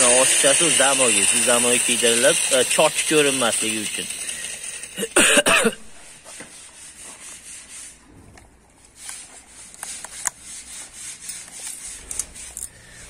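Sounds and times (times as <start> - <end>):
tiles rubbing: 6.1 - 13.0.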